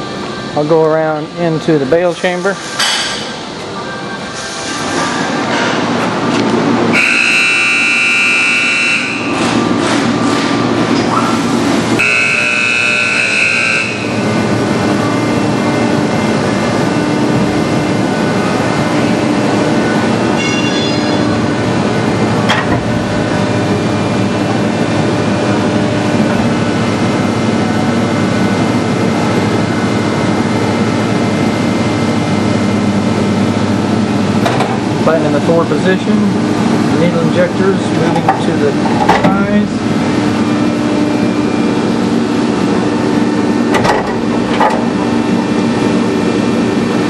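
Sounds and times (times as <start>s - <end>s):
hydraulic machine drone: 0.0s - 47.0s
high steady tone: 12.0s - 15.9s.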